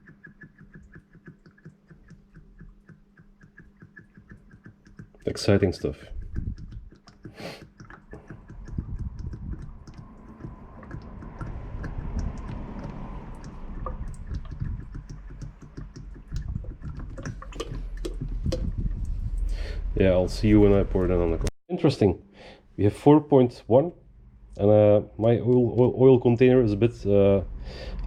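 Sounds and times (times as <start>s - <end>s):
oil glugging from container: 0.0s - 19.9s.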